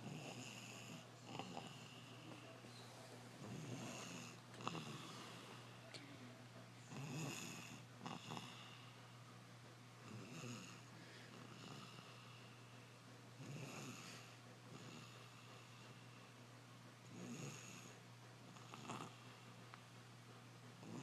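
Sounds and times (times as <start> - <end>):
child snoring heavily: 0.0 - 2.2, 3.4 - 5.7, 6.9 - 9.0, 10.1 - 12.4, 13.4 - 16.0, 17.1 - 19.3
steady low hum: 0.0 - 21.0.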